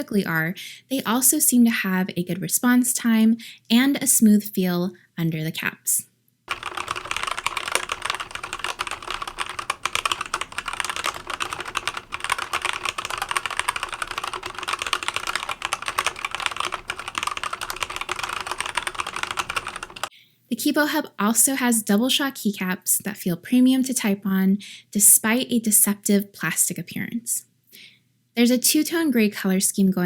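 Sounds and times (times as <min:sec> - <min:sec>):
fast mechanical keyboard typing: 0:06.5 - 0:20.1.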